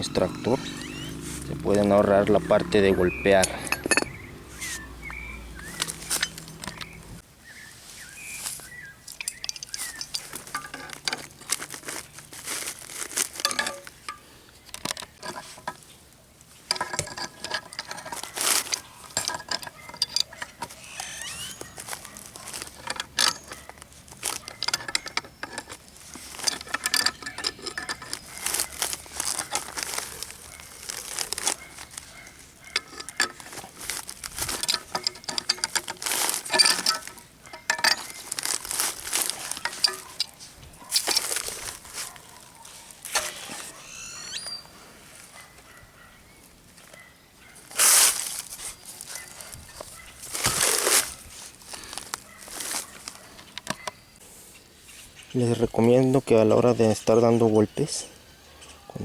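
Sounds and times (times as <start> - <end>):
hammering metal punch on bearing: 2.4 - 5.2.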